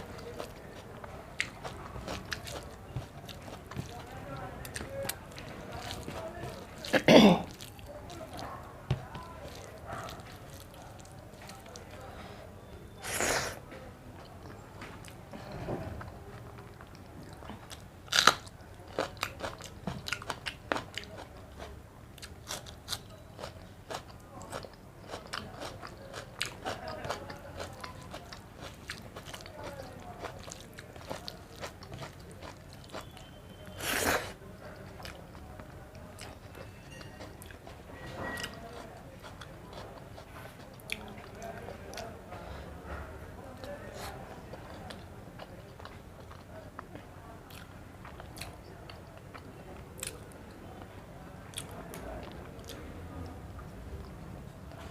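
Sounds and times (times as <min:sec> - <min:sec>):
person chewing food: 0:00.0 - 0:12.0, 0:14.2 - 0:42.1, 0:43.6 - 0:50.3
crunchy bites: 0:18.1 - 0:20.8.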